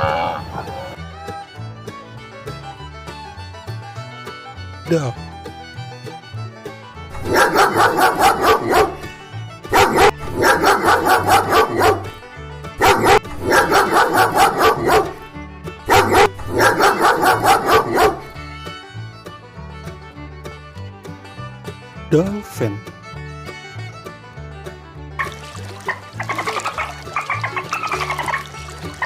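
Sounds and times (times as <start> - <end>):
country-style background music: 0.0 - 29.0
duck quacking rapidly: 7.1 - 9.1, 9.7 - 12.2, 12.8 - 15.2, 15.9 - 18.3, 25.2 - 29.0.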